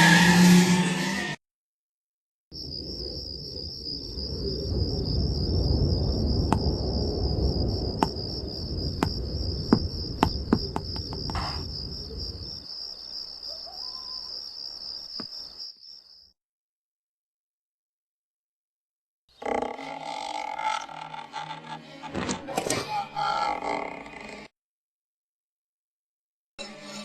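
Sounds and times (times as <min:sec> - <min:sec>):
crickets trilling: 0:02.6 - 0:16.3
low rumble: 0:02.7 - 0:12.6.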